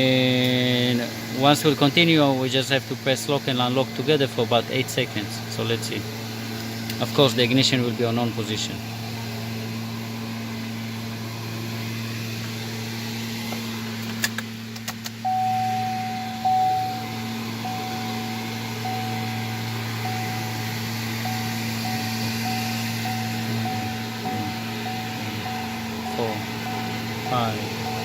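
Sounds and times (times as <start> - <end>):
steady low hum: 0.0 - 28.0
sharp clicks: 14.0 - 15.2
electronic beeps: 15.3 - 28.0.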